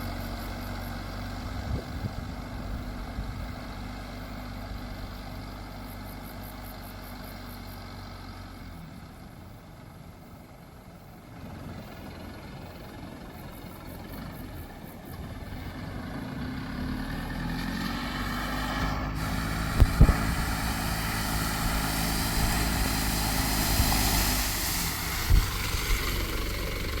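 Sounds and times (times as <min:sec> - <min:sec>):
diesel engine running: 0:00.0 - 0:27.0
road and wind noise: 0:00.0 - 0:27.0
sharp thumps: 0:19.6 - 0:22.9.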